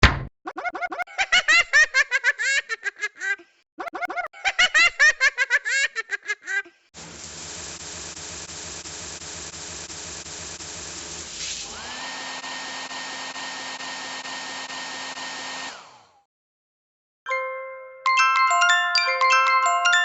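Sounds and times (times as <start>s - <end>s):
high-pitched cartoon giggling: 0.5s - 6.7s.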